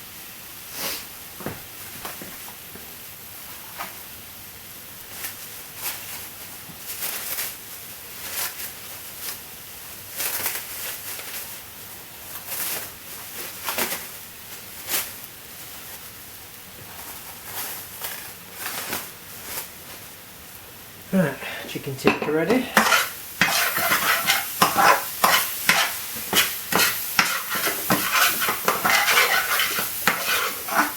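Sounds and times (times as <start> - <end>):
spices sizzling in a pan: 0.0 - 30.9
stirring scrapes: 22.0 - 30.9.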